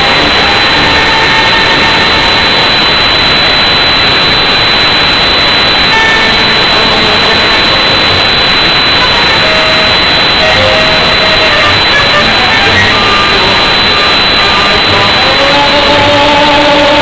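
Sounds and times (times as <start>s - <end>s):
faint tango music tones: 0.0s - 3.5s, 5.8s - 17.0s
distorted hiss-like roar: 0.0s - 17.0s.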